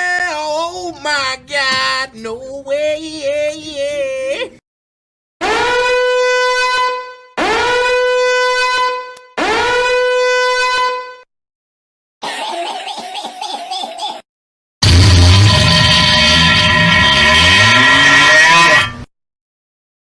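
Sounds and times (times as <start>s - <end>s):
horn long blasts: 5.4s - 11.2s, 14.8s - 19.1s
rough wavering sound effect: 14.8s - 19.0s.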